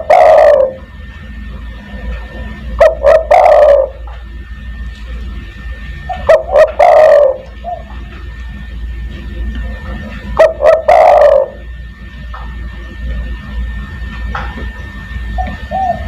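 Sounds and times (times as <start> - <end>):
dove cooing: 0.0 - 0.9, 2.3 - 4.2, 6.0 - 8.1, 9.8 - 11.8, 15.3 - 16.0.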